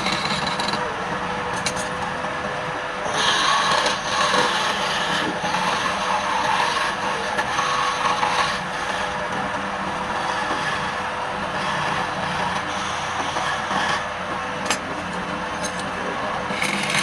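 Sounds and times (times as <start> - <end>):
wood lathe humming: 0.0 - 17.0
turning tool scraping wood: 3.1 - 9.4, 10.1 - 11.0, 11.6 - 14.1, 16.5 - 17.0.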